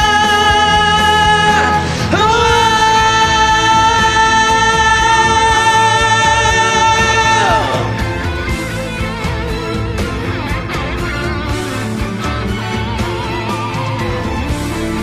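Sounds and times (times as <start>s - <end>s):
person singing long notes: 0.0s - 8.4s
pop ballad backing music: 0.0s - 15.0s.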